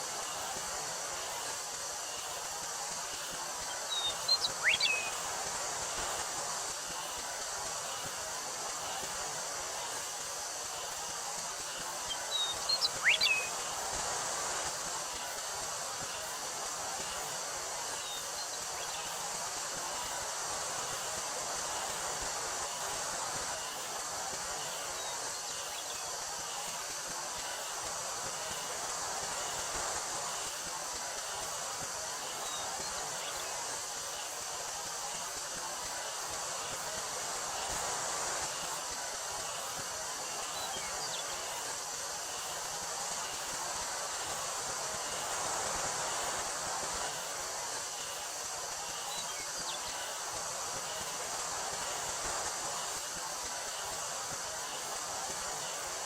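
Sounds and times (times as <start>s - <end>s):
cicadas droning: 0.0s - 56.0s
wind through wheat field: 0.0s - 56.0s
faint short chirps: 12.3s - 13.5s.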